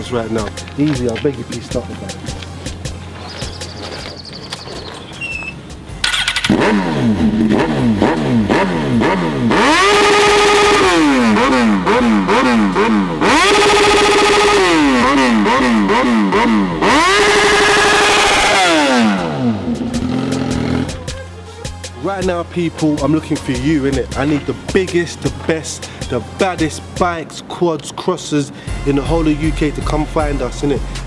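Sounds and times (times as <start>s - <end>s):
motorcycle engine revving: 3.1s - 21.2s.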